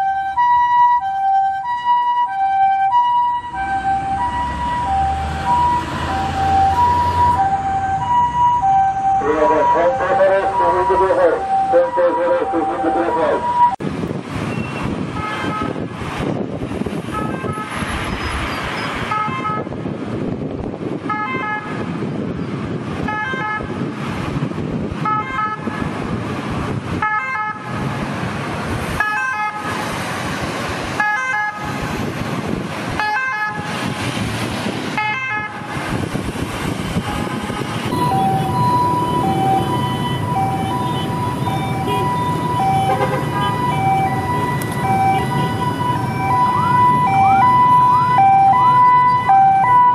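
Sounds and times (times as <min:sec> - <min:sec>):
two-tone hi-lo siren: 0:00.0 - 0:13.8, 0:29.0 - 0:29.8, 0:36.9 - 0:49.9
ambulance siren: 0:00.0 - 0:13.9, 0:14.8 - 0:19.8, 0:21.0 - 0:21.9, 0:23.0 - 0:23.9, 0:25.0 - 0:26.0, 0:26.9 - 0:28.0, 0:28.9 - 0:30.0, 0:30.8 - 0:34.1, 0:34.9 - 0:49.9
road noise: 0:00.0 - 0:49.9.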